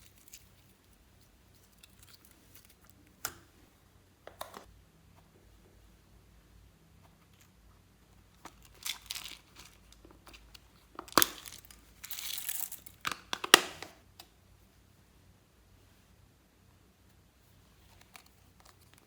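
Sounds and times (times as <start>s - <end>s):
crinkling handling noise: 0.0s - 3.5s, 7.0s - 14.0s, 17.7s - 19.0s.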